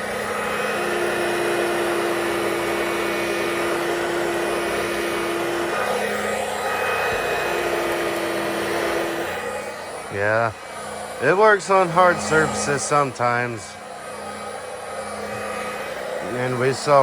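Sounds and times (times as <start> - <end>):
handheld vacuum cleaner running: 0.0 - 17.0
steady pitched tone: 5.6 - 17.0.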